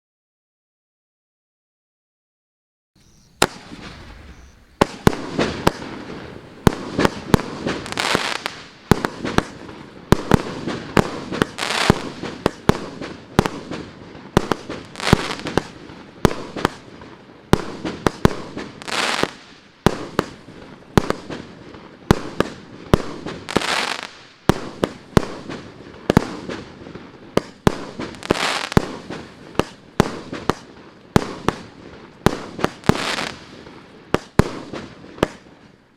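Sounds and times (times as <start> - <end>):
crackling hiss: 3.0 - 35.9
firework battery bangs: 3.4 - 13.8.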